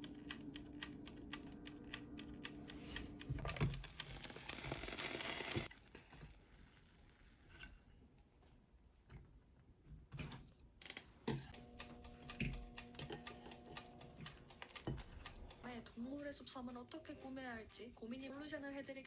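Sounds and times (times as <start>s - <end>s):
rapid keyboard typing: 3.4s - 5.7s, 11.6s - 15.6s.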